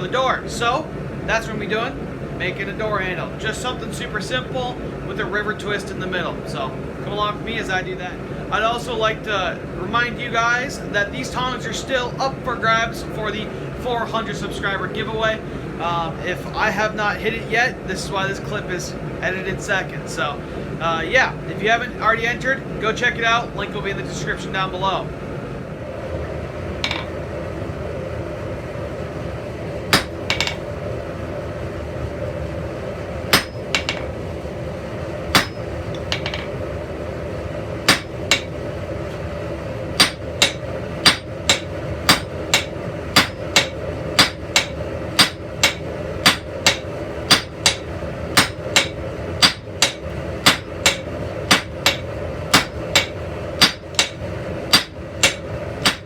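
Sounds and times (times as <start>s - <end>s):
constant background noise: 0.0s - 56.0s
hammer striking metal on anvil: 26.8s - 27.2s, 29.9s - 30.7s, 33.3s - 34.2s, 35.3s - 36.6s, 37.9s - 38.6s, 40.0s - 56.0s.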